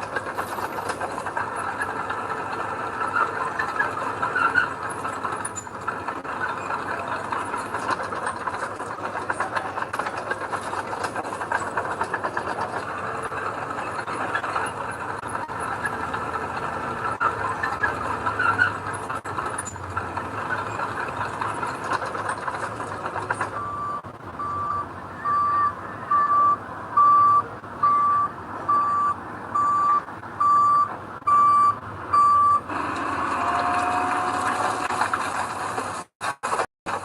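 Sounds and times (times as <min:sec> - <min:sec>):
construction vehicle engine: 0:00.0 - 0:37.0
reversing alarm beeps: 0:23.5 - 0:32.6.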